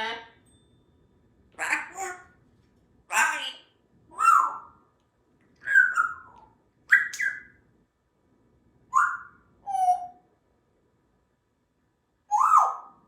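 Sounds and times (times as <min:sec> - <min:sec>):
parrot whistles and chirps: 0:04.2 - 0:04.8, 0:05.6 - 0:07.6, 0:08.9 - 0:10.2, 0:12.3 - 0:13.0.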